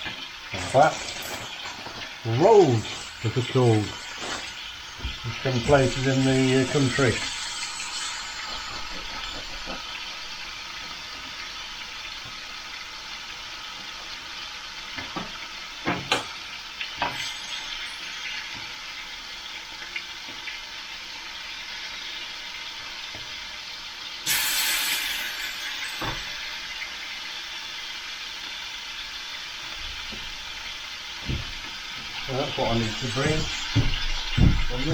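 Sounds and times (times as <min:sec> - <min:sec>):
bacon sizzling in a frying pan: 0:00.0 - 0:34.9
short knocks: 0:33.6 - 0:34.8.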